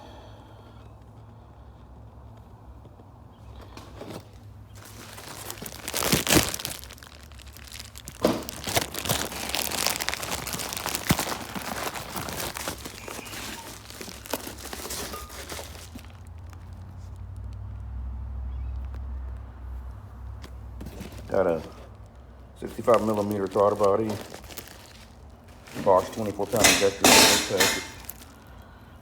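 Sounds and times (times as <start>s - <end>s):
packaging crinkling and rustling: 3.6s - 17.5s, 20.4s - 28.8s.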